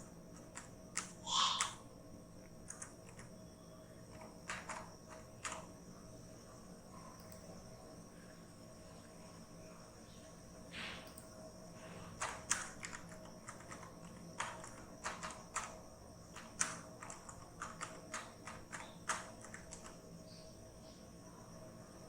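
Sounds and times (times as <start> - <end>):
faint high-pitched whine: 0.0 - 22.0
keyboard typing clicks: 0.3 - 1.8, 2.4 - 3.4, 4.1 - 5.7, 12.2 - 20.0.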